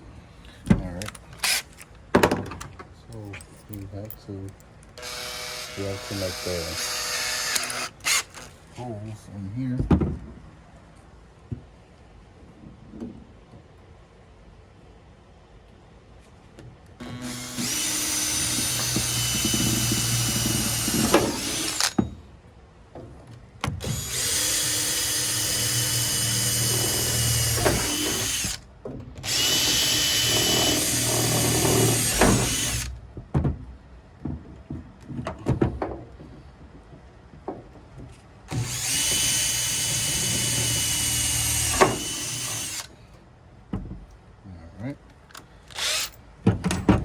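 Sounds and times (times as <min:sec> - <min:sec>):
power drill running: 0:05.0 - 0:08.6, 0:17.0 - 0:22.0, 0:23.8 - 0:28.6, 0:29.2 - 0:32.9, 0:38.5 - 0:42.9, 0:45.7 - 0:46.2.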